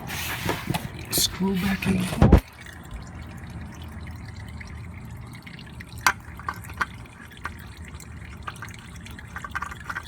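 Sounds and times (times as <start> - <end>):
oil dripping into pan: 2.4 - 10.0.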